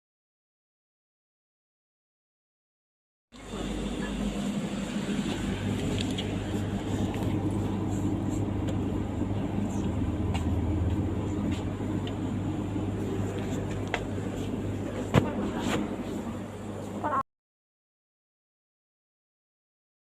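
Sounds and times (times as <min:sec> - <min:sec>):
vehicle engine humming: 0:03.4 - 0:17.2.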